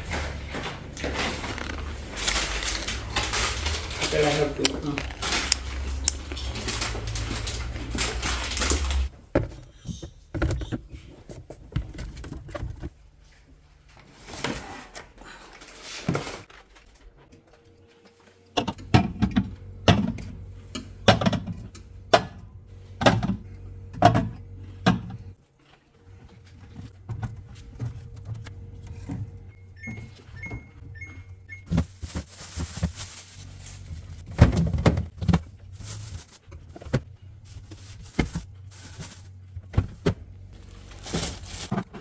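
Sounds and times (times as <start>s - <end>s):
steady low hum: 26.0s - 42.0s.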